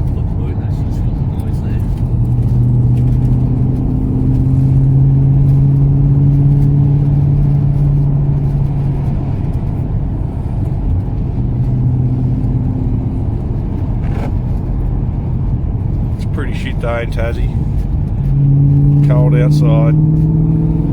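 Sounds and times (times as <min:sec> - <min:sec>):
car engine droning: 0:00.0 - 0:20.9.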